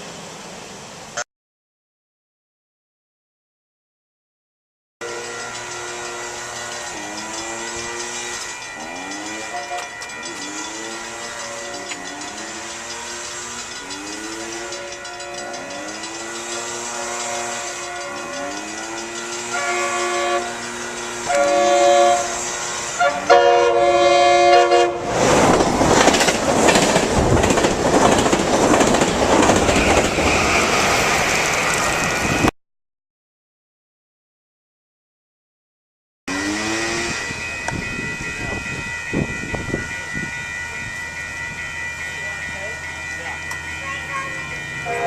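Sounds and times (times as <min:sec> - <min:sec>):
train passing on rails: 0:00.0 - 0:01.2, 0:05.0 - 0:32.5, 0:36.3 - 0:45.0
train horn blasts: 0:05.0 - 0:25.2, 0:36.3 - 0:45.0.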